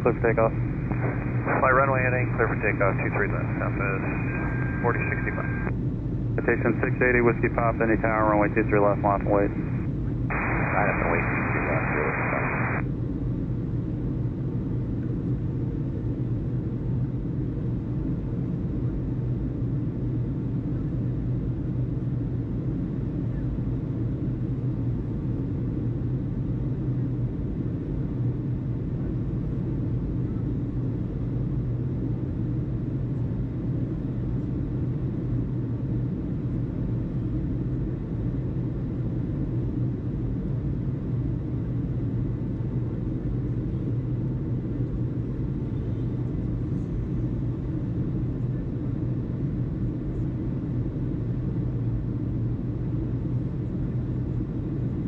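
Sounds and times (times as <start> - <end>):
steady low rumble: 0.0 - 12.8.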